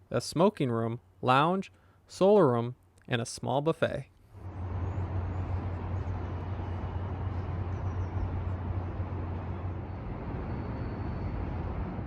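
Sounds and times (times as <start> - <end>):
steady low hum: 4.3 - 12.0
traffic noise: 4.3 - 12.0.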